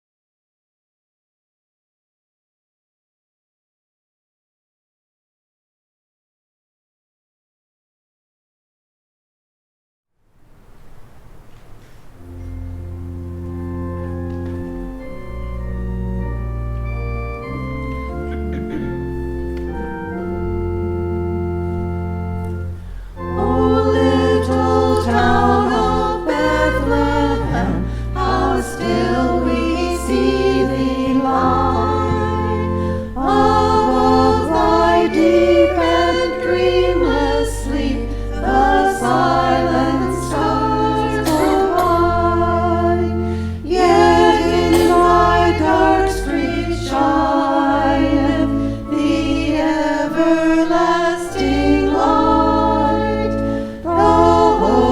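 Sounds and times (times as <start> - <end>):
organ chords: 10.6 - 54.9
choir singing: 12.7 - 54.9.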